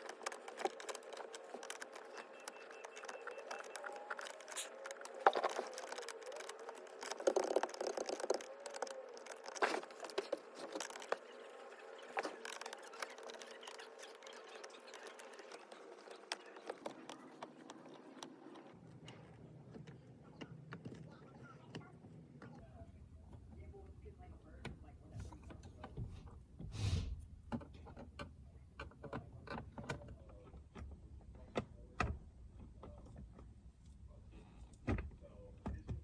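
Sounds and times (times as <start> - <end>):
screwdriver clicking and scraping: 0.0 - 18.3.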